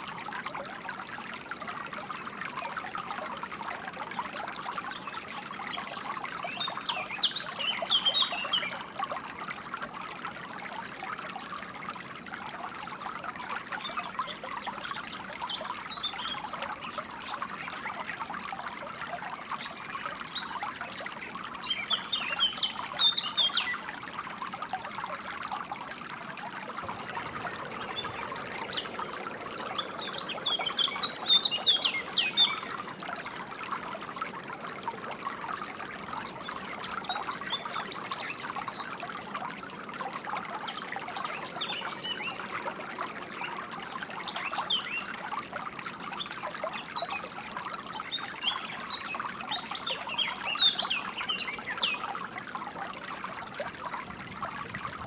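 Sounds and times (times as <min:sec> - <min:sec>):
stream trickling: 0:00.0 - 0:55.0
songbirds chirping: 0:04.5 - 0:08.9, 0:19.4 - 0:24.1, 0:26.5 - 0:39.0.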